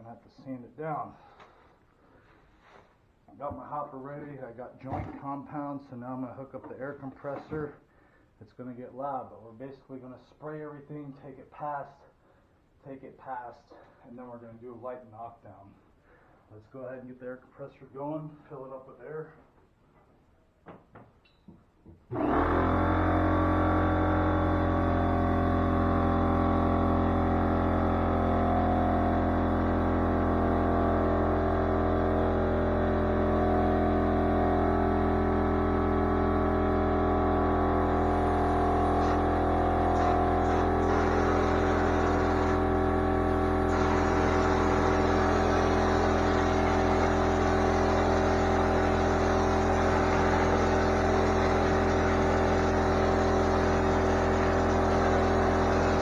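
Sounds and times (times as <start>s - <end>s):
air compressor humming: 22.1s - 56.0s
air hissing: 38.1s - 52.4s.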